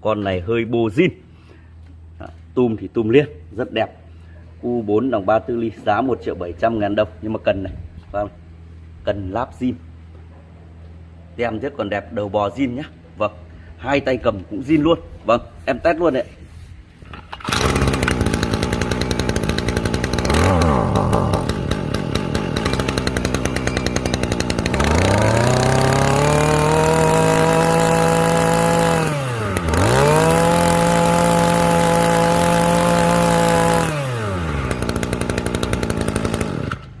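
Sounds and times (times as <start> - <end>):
brush cutter engine revving: 17.0 - 37.0.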